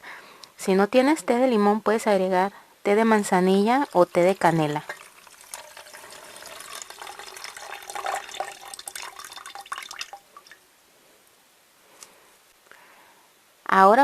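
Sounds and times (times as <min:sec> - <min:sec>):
tea pouring and splashing: 0:03.5 - 0:10.6.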